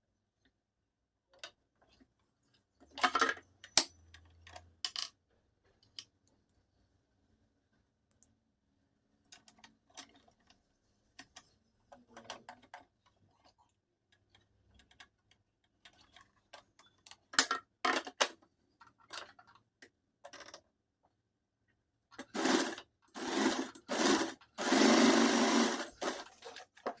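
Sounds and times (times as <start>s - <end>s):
sewing machine stitching: 22.2s - 26.8s.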